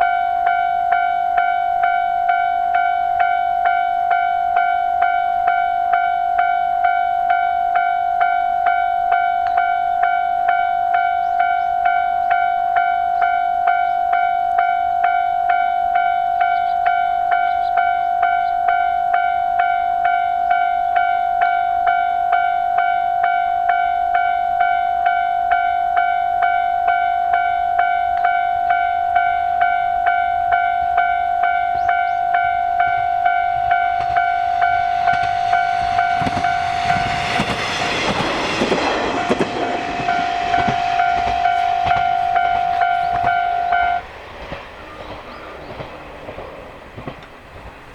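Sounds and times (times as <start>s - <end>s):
railroad crossing alarm ringing: 0.0s - 47.9s
train passing: 0.0s - 47.9s.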